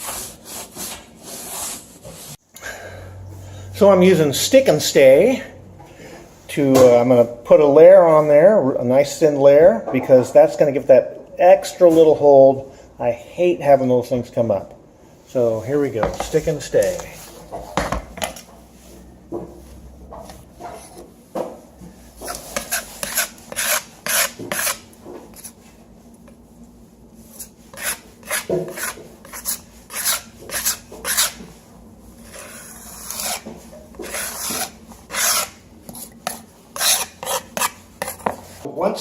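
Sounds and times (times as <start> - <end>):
hand tool scraping adhesive: 22.2 - 25.6, 27.4 - 31.4, 32.3 - 38.4.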